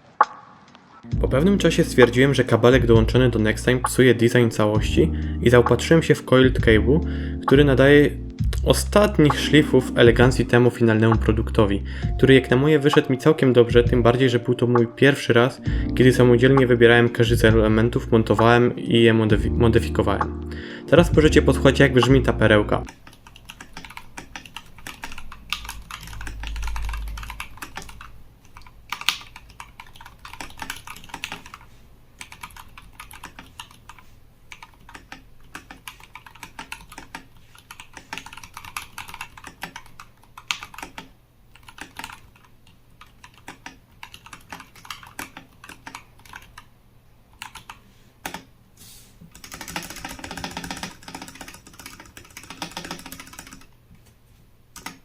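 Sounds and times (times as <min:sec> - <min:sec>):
mechanical keyboard typing: 0:22.8 - 0:46.7, 0:47.4 - 0:48.5, 0:49.3 - 0:53.7, 0:54.8 - 0:55.0.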